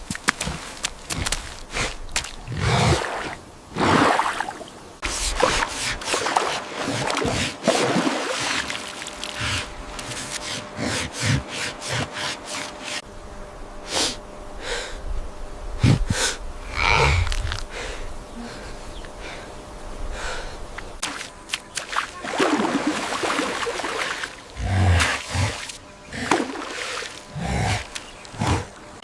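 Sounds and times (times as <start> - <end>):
animal snorting and huffing: 0.3 - 4.0, 5.0 - 13.0, 15.8 - 19.5, 24.1 - 28.8.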